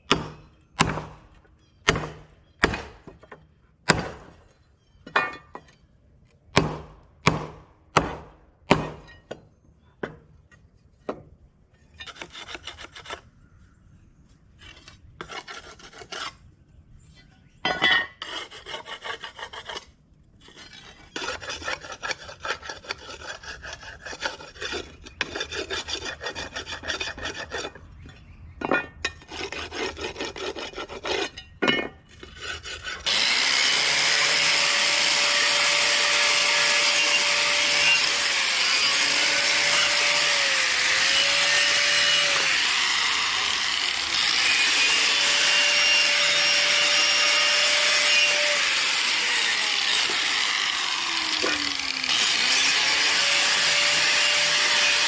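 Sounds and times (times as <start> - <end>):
tool strikes on steel: 0.0 - 1.2, 6.6 - 9.4
scraping on metal: 17.1 - 33.7.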